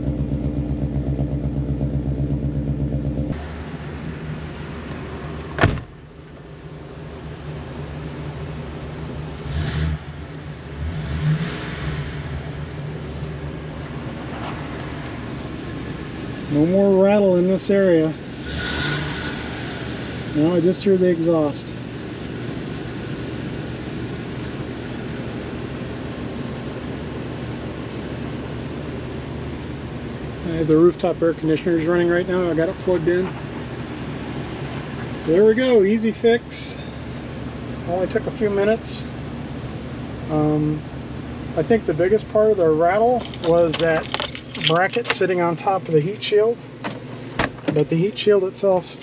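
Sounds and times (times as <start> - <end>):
engine exhaust running: 0.0 - 49.0.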